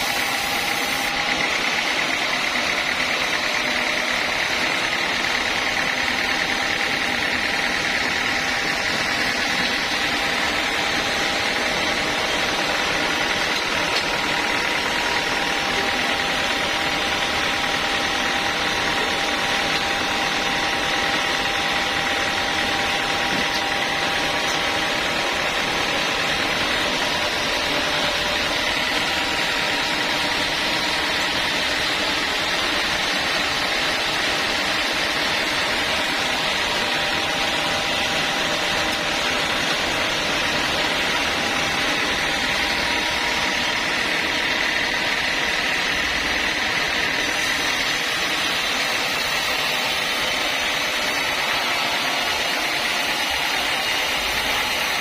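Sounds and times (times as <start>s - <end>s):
sawmill machine droning: 0.0s - 55.0s.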